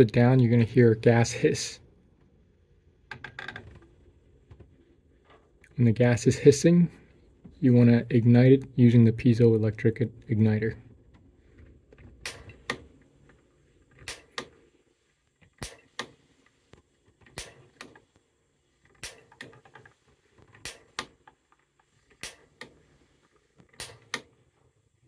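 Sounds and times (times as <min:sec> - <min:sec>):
piezo igniter double clicks: 0:12.2 - 0:12.8, 0:14.0 - 0:14.6, 0:15.6 - 0:16.2, 0:17.3 - 0:18.0, 0:19.0 - 0:19.5, 0:20.6 - 0:21.1, 0:22.2 - 0:22.7, 0:23.8 - 0:24.3.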